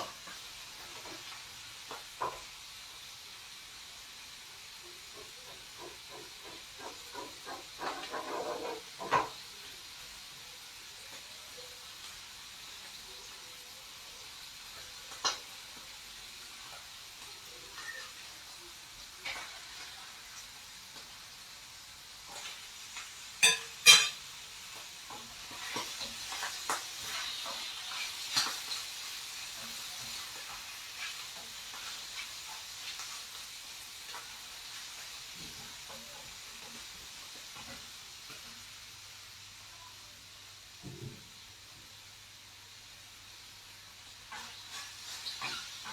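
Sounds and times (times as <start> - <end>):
food sizzling in a frying pan: 0.0 - 45.9
utensils scraping a pan: 5.1 - 9.4, 17.6 - 18.3, 25.1 - 33.3, 44.3 - 45.9.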